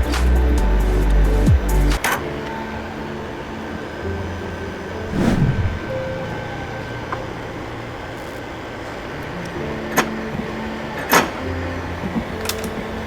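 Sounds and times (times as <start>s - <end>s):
background music with held notes: 0.0s - 5.1s, 5.9s - 13.0s
brief swell of noise: 5.1s - 6.4s.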